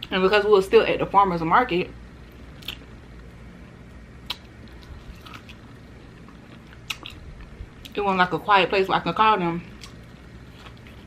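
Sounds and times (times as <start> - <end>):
person chewing food: 2.3 - 3.3, 4.2 - 8.0, 9.7 - 11.0
sharp mouth smacks: 2.6 - 2.8, 4.2 - 4.5.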